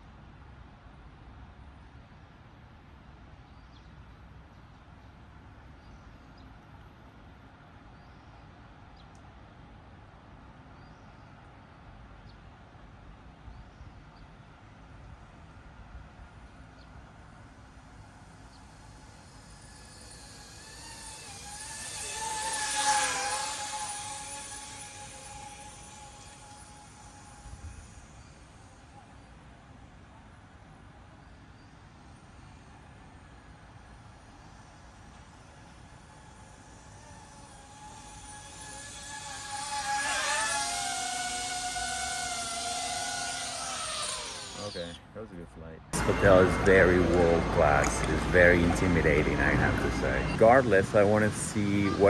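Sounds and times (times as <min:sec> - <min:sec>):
drone propellers whining: 0:16.4 - 0:30.0, 0:31.3 - 0:45.0, 0:46.0 - 0:52.0.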